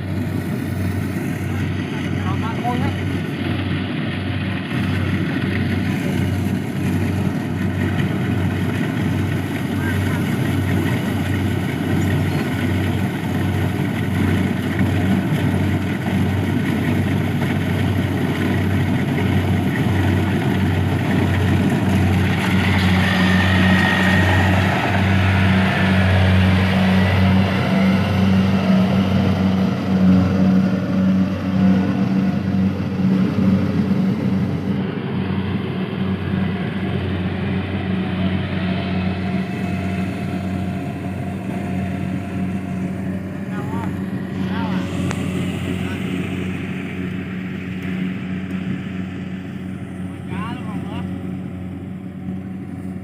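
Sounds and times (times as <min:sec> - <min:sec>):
small engine running: 0:00.0 - 0:53.0.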